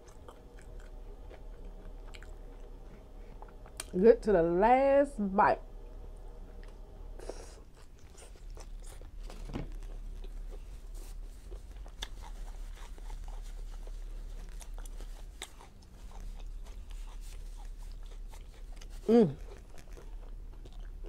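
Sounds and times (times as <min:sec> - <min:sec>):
person chewing food: 0:00.0 - 0:04.0, 0:06.6 - 0:21.0.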